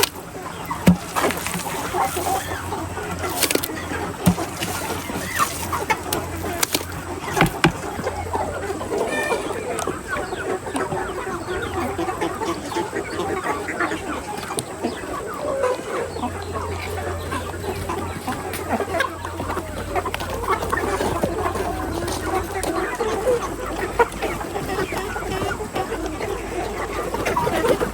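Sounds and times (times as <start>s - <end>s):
chickens clucking: 0.0s - 27.9s.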